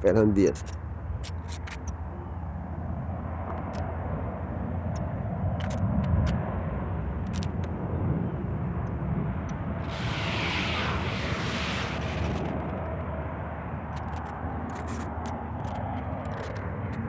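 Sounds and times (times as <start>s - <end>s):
low rumble of road traffic: 0.0s - 17.0s
vehicle passing: 9.8s - 12.9s.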